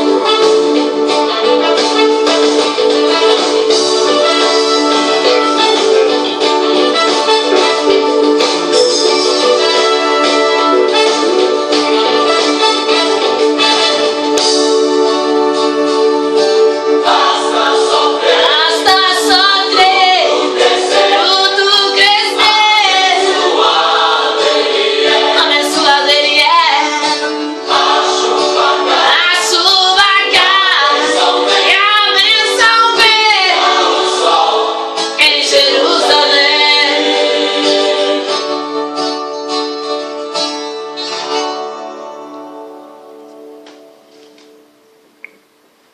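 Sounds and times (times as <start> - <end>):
guitar and keyboard accompaniment: 0.0 - 45.2
person singing gospel song: 16.3 - 38.8.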